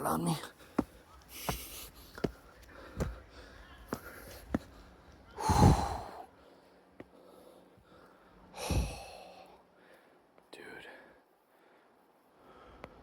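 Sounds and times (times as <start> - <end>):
person exhaling heavily: 5.4 - 6.2.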